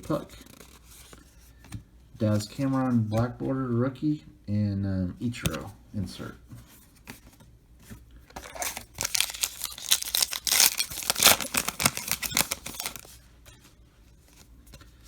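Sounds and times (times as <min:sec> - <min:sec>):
wrapper tearing and crinkling: 0:08.4 - 0:13.2.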